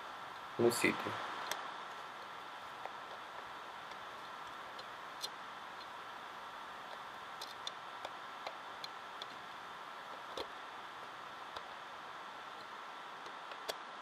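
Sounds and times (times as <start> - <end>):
steady hiss: 0.0 - 14.0
small parts clicking and tapping: 6.8 - 9.5, 12.5 - 13.9.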